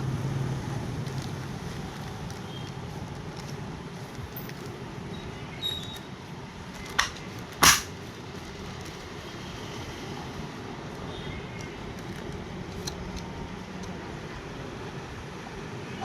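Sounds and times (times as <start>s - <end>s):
electric fan whirring: 0.0s - 16.0s
sharp knocks: 7.0s - 7.9s.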